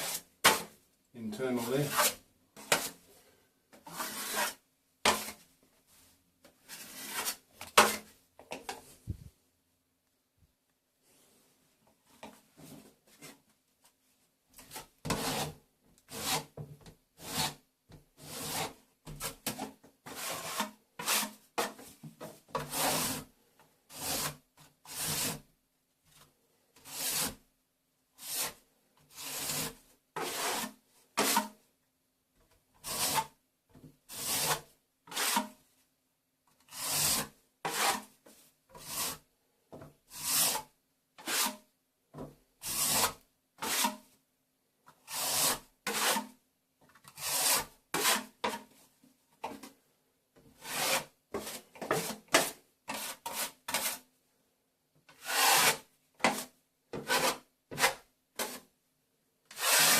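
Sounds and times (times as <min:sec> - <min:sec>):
trowel scraping plaster: 0:00.0 - 0:00.8, 0:01.4 - 0:03.0, 0:03.8 - 0:05.4, 0:06.5 - 0:08.1, 0:14.6 - 0:16.6, 0:17.2 - 0:17.6, 0:18.2 - 0:23.3, 0:23.9 - 0:25.5, 0:26.8 - 0:27.4, 0:28.2 - 0:31.6, 0:32.8 - 0:33.4, 0:34.1 - 0:35.6, 0:36.6 - 0:39.3, 0:40.1 - 0:41.7, 0:42.6 - 0:44.1, 0:44.9 - 0:46.4, 0:47.0 - 0:48.8, 0:50.5 - 0:54.1, 0:55.1 - 0:58.7, 0:59.5 - 0:59.9.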